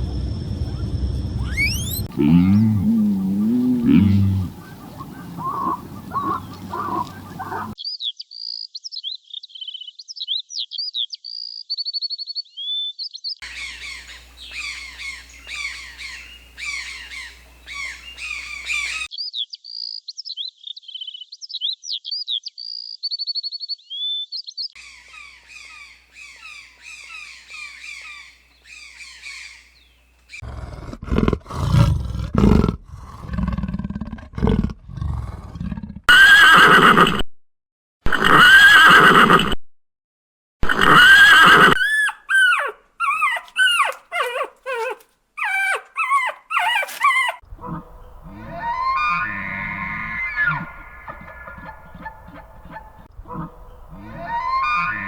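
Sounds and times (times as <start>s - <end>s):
deep animal calls: 0.0s - 7.8s, 13.4s - 19.1s, 40.6s - 55.0s
small birds chirping: 0.0s - 30.4s, 41.8s - 55.0s
songbird whistles and trills: 0.6s - 2.1s, 41.8s - 55.0s.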